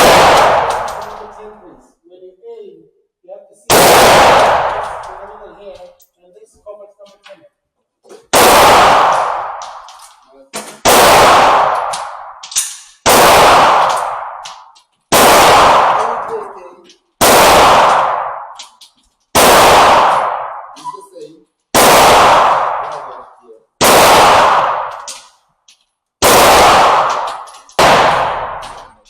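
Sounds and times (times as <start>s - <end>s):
handgun shots with echo: 0.0s - 1.6s, 3.7s - 5.5s, 8.3s - 16.5s, 17.2s - 18.8s, 19.4s - 20.9s, 21.8s - 23.2s, 23.8s - 25.4s, 26.2s - 29.0s.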